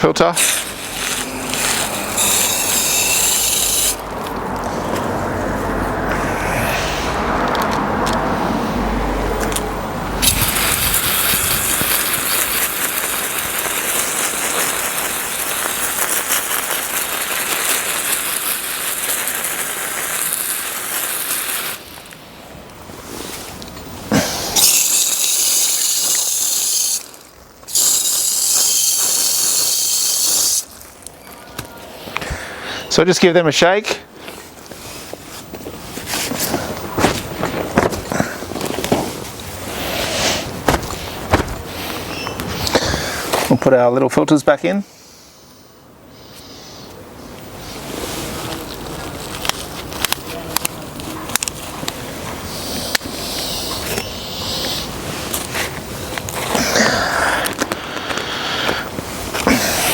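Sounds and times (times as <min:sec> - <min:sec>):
hose spraying water through filter: 0:00.4 - 0:04.3, 0:10.2 - 0:22.4, 0:23.0 - 0:31.4.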